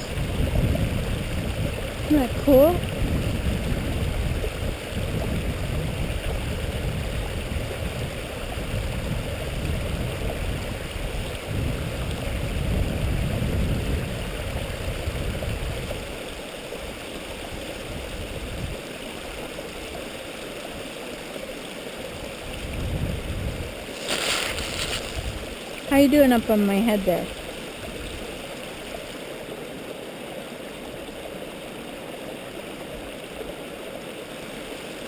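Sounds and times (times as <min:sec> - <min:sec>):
stream running over rocks: 0:00.0 - 0:35.0.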